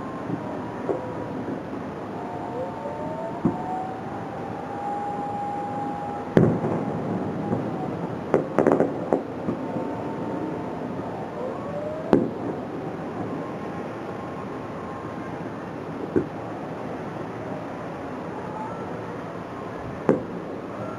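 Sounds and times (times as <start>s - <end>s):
rising firework whistle: 0.0s - 16.3s, 17.4s - 20.9s
firework bangs: 6.4s - 10.0s
crackling firework pops: 8.3s - 9.6s, 12.1s - 12.6s, 16.1s - 16.4s, 20.0s - 20.3s.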